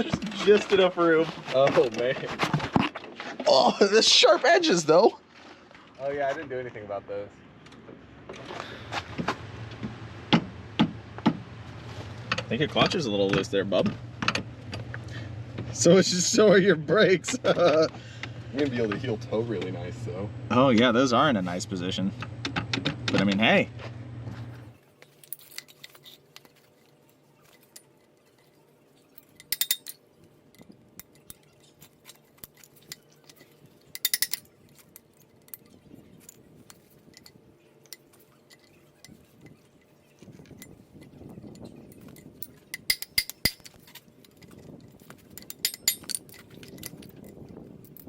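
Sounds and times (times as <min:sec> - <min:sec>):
hand tools clinking on metal: 0:25.0 - 0:48.0.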